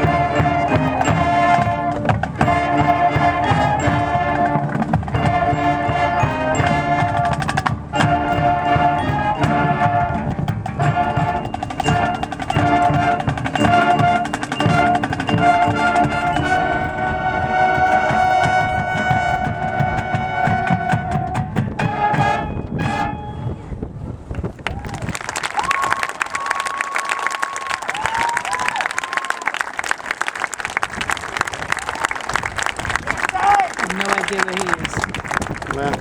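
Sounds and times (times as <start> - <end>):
snare drum and percussion: 0.0 - 16.8, 17.7 - 22.5, 33.8 - 36.0
marching band chords: 0.0 - 23.5.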